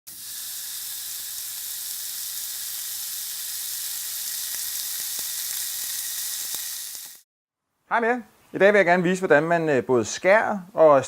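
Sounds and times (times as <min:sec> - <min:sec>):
meat sizzling on a grill: 0:00.1 - 0:07.3.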